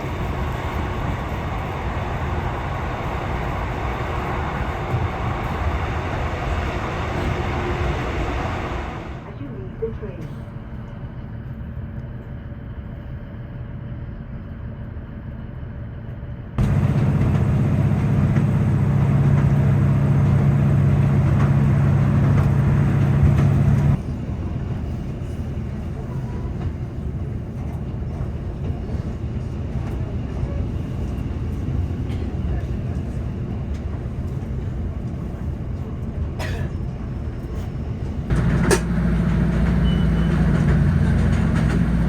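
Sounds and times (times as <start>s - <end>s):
low engine drone: 0.0s - 25.5s, 38.1s - 42.0s
diesel train rumbling: 0.0s - 42.0s.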